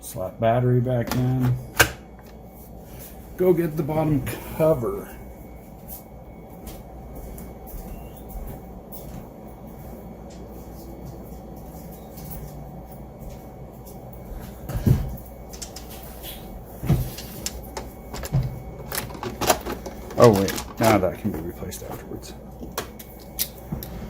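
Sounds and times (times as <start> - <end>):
steady low hum: 0.0 - 24.0
plastic parts being handled: 16.9 - 21.4.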